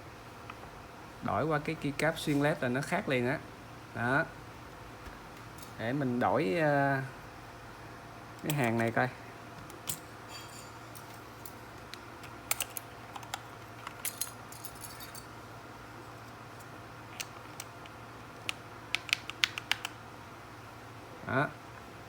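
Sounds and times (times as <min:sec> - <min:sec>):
keycaps clicking onto keyboard: 0:18.4 - 0:20.0.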